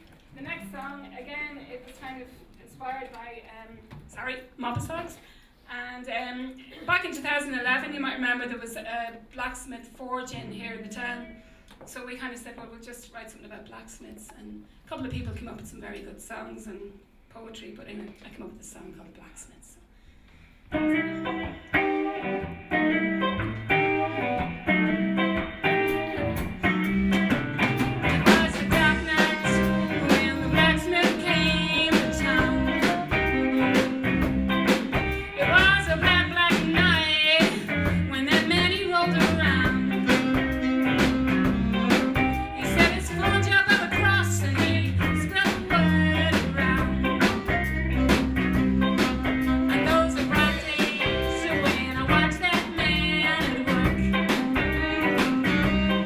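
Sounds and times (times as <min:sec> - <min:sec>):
guitar: 0:00.0 - 0:05.4, 0:10.3 - 0:11.7, 0:20.6 - 0:56.0
live blues band playing: 0:20.8 - 0:56.0.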